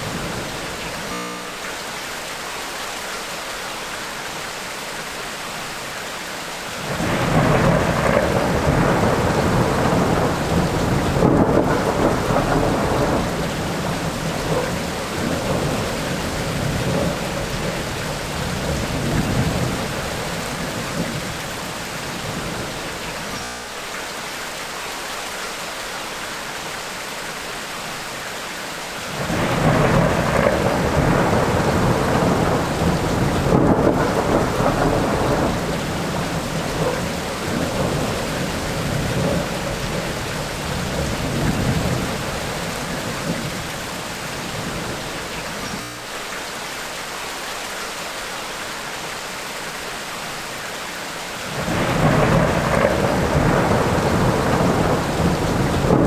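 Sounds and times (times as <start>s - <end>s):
steady rain hiss: 0.0s - 56.0s
low roll of thunder: 6.8s - 23.4s, 29.1s - 45.8s, 51.5s - 56.0s.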